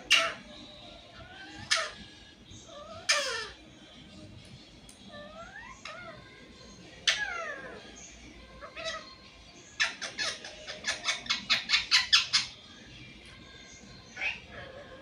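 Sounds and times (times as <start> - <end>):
parrot calling: 0.0 - 3.6, 5.1 - 6.3, 7.0 - 8.0, 8.6 - 12.7, 14.1 - 15.0.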